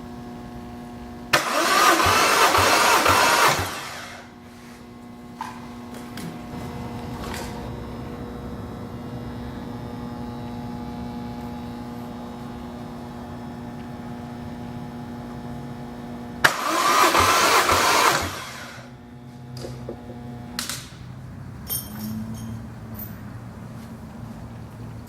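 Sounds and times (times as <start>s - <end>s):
steady hum: 0.0s - 25.0s
engine starter cranking: 1.4s - 4.3s, 16.4s - 18.9s.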